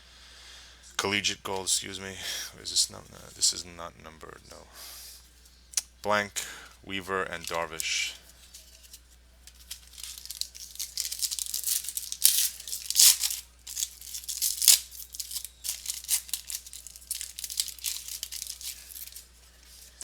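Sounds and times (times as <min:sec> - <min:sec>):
card wrapper crinkling: 0:07.2 - 0:20.0
wrapper ripping: 0:08.6 - 0:20.0.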